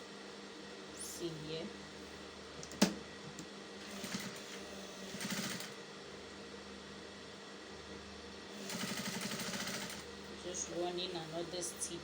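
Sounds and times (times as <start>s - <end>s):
steady motor hum: 0.0s - 12.0s
sewing machine stitching: 3.8s - 4.5s, 5.1s - 5.8s, 8.6s - 10.0s.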